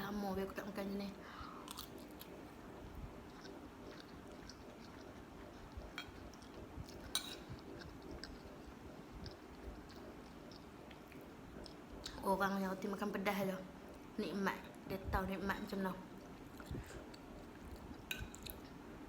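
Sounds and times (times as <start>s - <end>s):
person chewing food: 1.5s - 12.2s, 16.2s - 19.0s.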